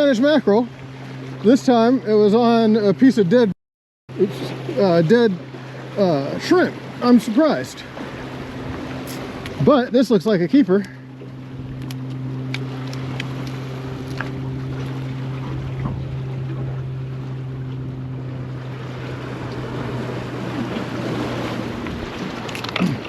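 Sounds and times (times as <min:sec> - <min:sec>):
boat motor humming: 0:00.0 - 0:23.0
wind: 0:00.0 - 0:23.0
surf: 0:04.1 - 0:23.0.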